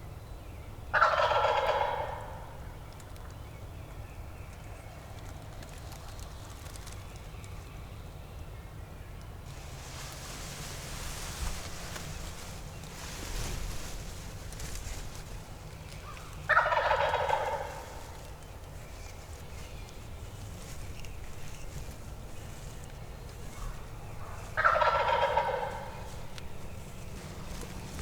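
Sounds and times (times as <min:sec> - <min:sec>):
turkey gobbling: 0:01.0 - 0:02.4, 0:15.8 - 0:18.5, 0:23.5 - 0:27.8.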